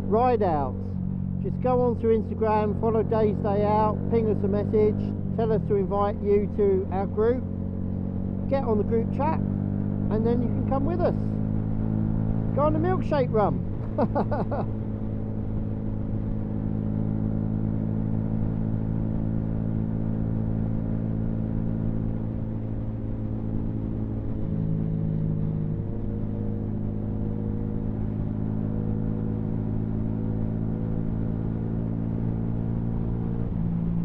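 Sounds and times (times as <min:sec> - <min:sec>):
motorcycle engine cruising: 0:00.0 - 0:34.0.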